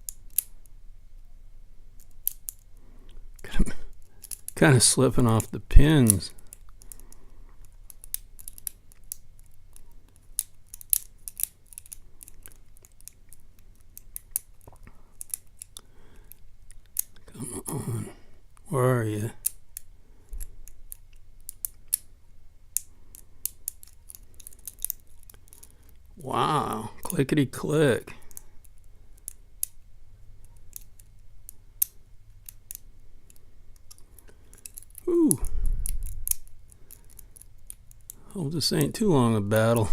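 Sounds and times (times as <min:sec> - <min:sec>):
lock pick clicking on lock pins: 0:05.2 - 0:17.2, 0:22.8 - 0:25.7, 0:30.4 - 0:35.1.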